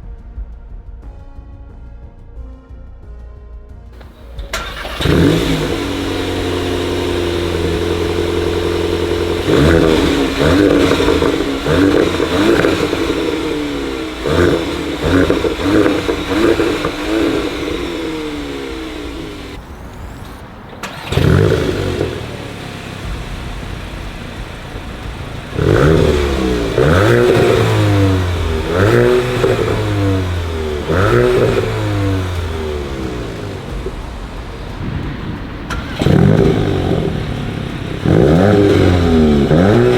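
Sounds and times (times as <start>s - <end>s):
car engine idling: 4.0s - 39.9s
car engine revving: 4.0s - 39.9s
car engine starting: 4.0s - 39.9s.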